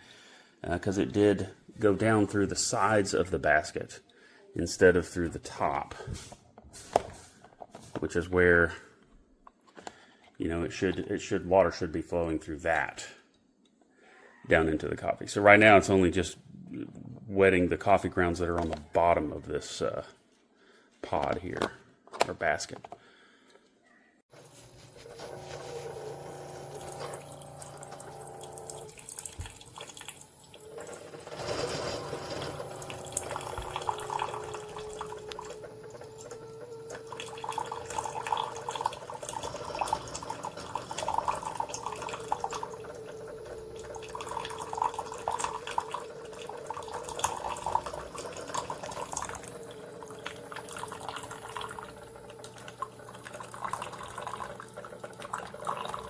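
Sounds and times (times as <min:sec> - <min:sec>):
coffee maker hum: 0:24.3 - 0:56.0
water trickling and gurgling: 0:36.8 - 0:56.0.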